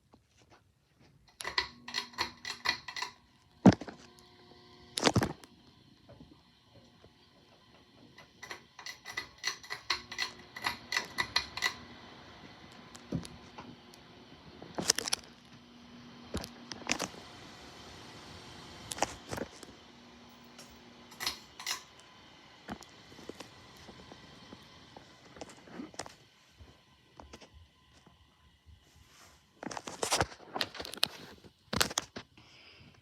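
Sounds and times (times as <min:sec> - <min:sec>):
pull chain rattling clicks: 0:01.3 - 0:03.4, 0:08.2 - 0:11.9, 0:20.6 - 0:21.9
fan motor hum and hiss: 0:01.3 - 0:33.0.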